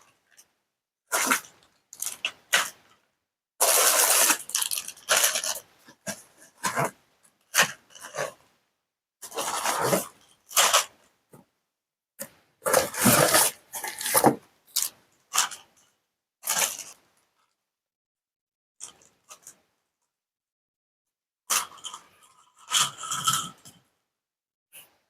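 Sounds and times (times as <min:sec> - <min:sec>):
packaging crinkling and tearing: 0:03.6 - 0:05.6.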